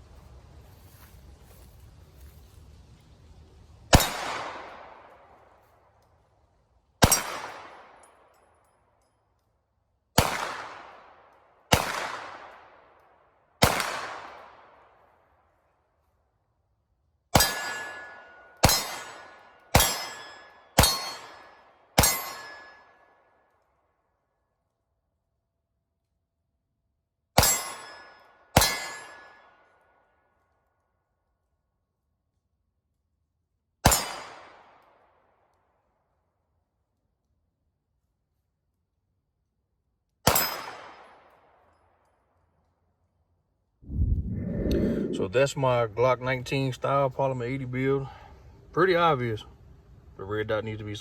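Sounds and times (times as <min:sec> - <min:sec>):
pistol shots: 0:04.0 - 0:05.1, 0:07.0 - 0:08.1, 0:10.2 - 0:11.1, 0:11.7 - 0:12.7, 0:13.6 - 0:14.8, 0:17.4 - 0:22.6, 0:33.8 - 0:34.9, 0:40.2 - 0:41.5.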